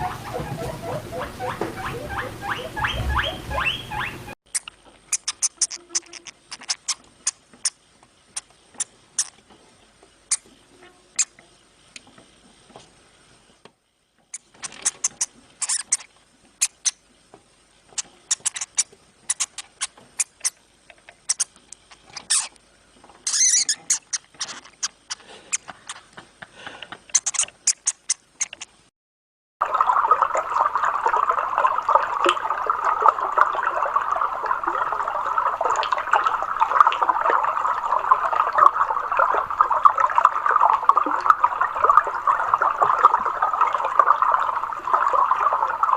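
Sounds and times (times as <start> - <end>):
rushing bubbling water: 0.0 - 4.4, 29.6 - 45.9
sharp clicks and scratching: 4.5 - 10.5, 14.3 - 17.1, 17.9 - 28.8.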